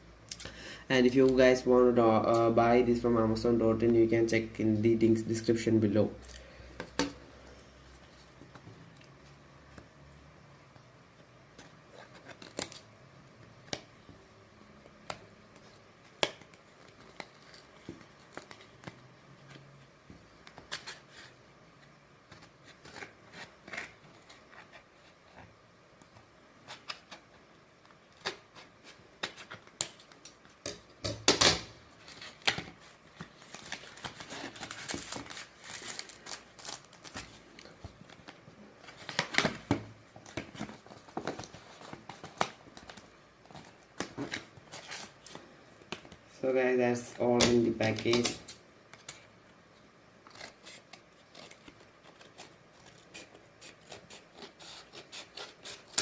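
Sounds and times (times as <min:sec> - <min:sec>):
packaging rustling: 0:31.9 - 0:46.2.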